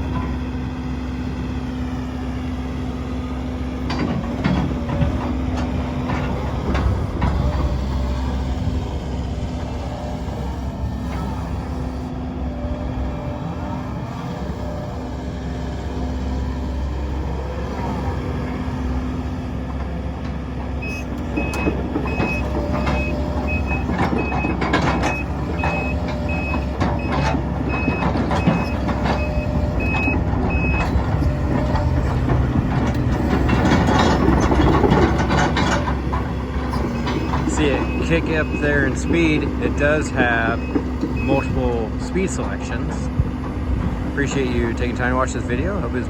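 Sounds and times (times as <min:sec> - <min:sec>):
excavator engine drone: 0:00.0 - 0:46.0
tracks clanking and rattling: 0:00.0 - 0:46.0
travel alarm beeping: 0:20.8 - 0:30.9.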